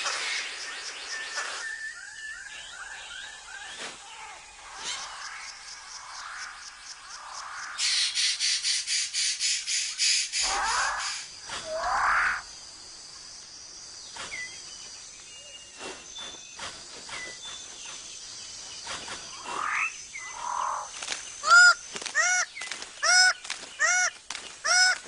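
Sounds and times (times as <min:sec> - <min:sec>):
quiet chirps and clicks: 0:04.9 - 0:07.9, 0:20.1 - 0:25.0
birds calling: 0:13.4 - 0:25.0.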